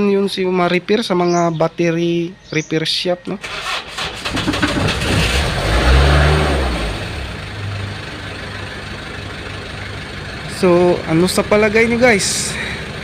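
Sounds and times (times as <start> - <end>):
diesel engine starting and idling: 3.3 - 13.0.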